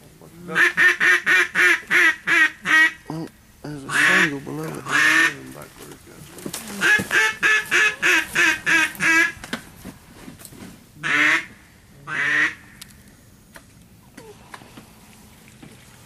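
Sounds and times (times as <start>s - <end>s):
duck quacking: 0.5s - 3.0s, 3.9s - 5.4s, 6.8s - 9.4s, 11.0s - 11.5s, 12.1s - 12.7s.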